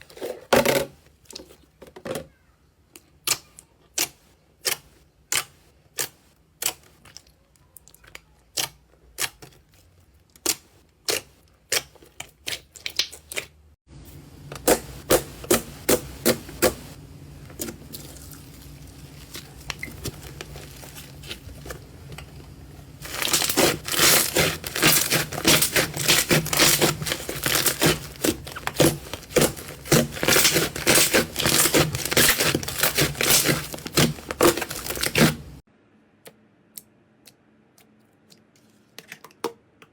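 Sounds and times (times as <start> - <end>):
slime popping and crackling: 23.0 - 35.6.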